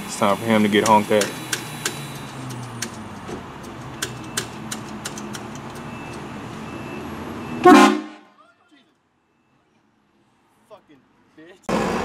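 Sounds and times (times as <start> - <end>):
sharp clicks: 0.8 - 6.3
train horn blast: 7.6 - 8.3.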